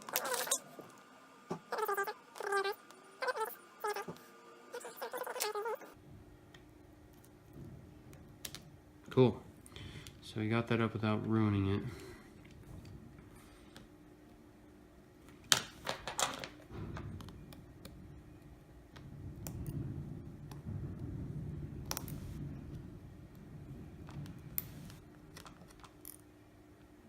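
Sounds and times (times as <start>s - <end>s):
low handling rumble: 18.0s - 25.3s.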